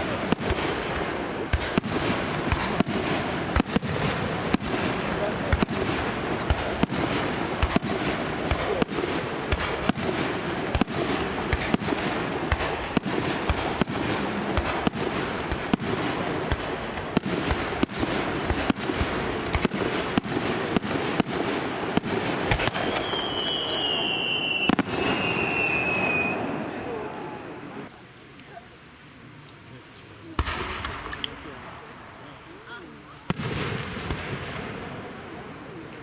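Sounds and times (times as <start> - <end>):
fireworks bangs: 0.0 - 27.9, 30.2 - 36.0
crackling rumble: 0.0 - 36.0
high falling whistle: 22.7 - 27.4.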